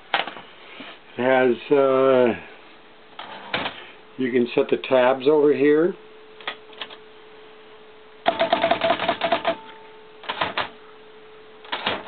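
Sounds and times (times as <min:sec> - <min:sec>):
typewriter mechanism clicking: 0:08.3 - 0:10.7, 0:11.7 - 0:12.0.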